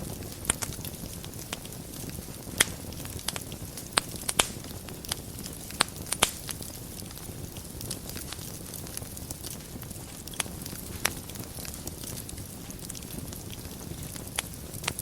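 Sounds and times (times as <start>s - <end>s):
fire crackling and popping: 0.0s - 15.0s
fire rumbling: 0.0s - 15.0s.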